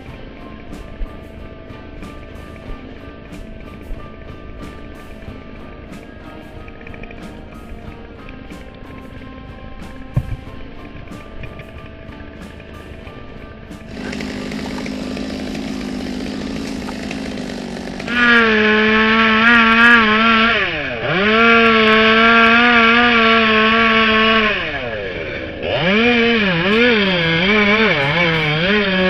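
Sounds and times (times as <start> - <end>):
chainsaw running: 13.6 - 29.0.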